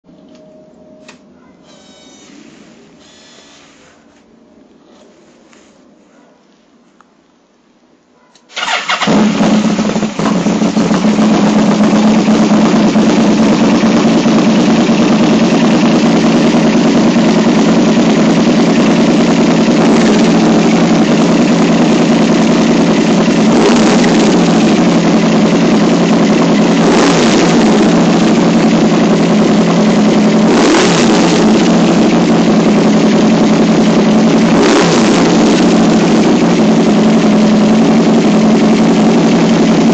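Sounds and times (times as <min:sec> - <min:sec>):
engine throttle blips: 0:08.5 - 0:39.9
motorcycle engine starting and idling: 0:08.5 - 0:39.9.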